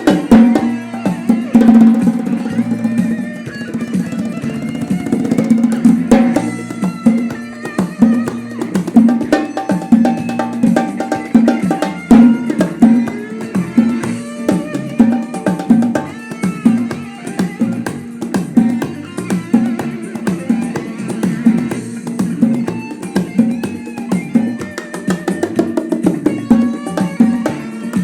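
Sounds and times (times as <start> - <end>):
percussion rhythm: 0.0 - 28.0
plucked-string melody: 0.0 - 28.0.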